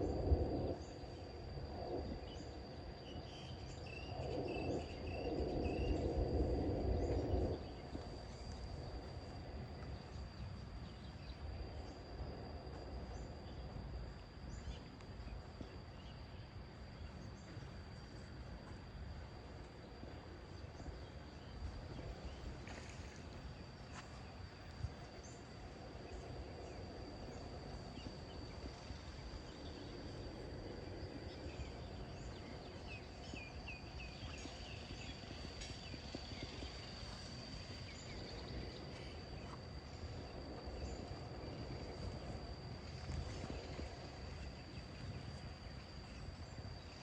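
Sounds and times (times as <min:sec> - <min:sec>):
steady high whine: 0:00.0 - 0:47.0.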